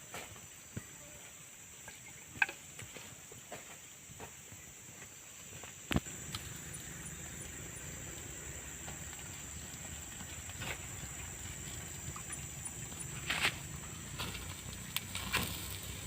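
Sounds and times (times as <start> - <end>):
high-pitched insect drone: 6.0 - 16.0.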